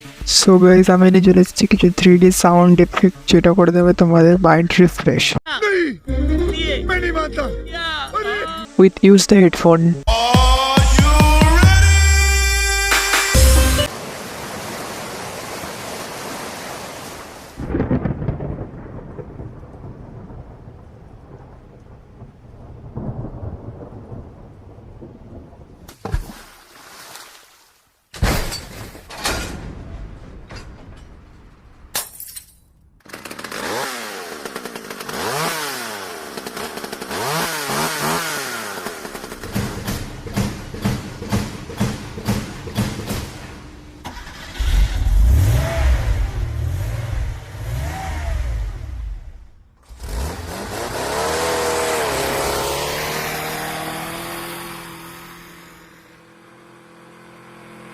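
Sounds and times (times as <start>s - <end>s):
rain-like noise: 13.9s - 25.9s
low rumbles: 38.9s - 55.5s.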